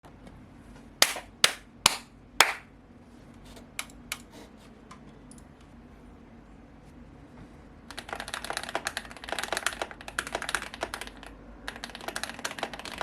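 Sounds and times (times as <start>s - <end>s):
mechanical keyboard keystrokes: 7.9s - 13.0s.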